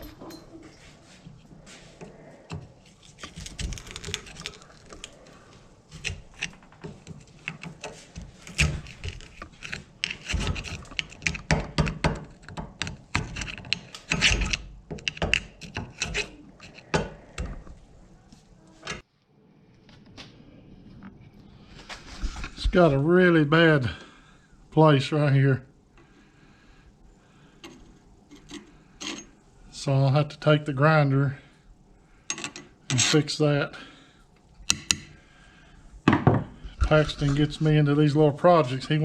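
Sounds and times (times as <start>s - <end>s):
scraping on hatchet head: 1.6s - 17.7s, 27.6s - 29.4s
sharp clicks and knocks: 5.9s - 17.8s.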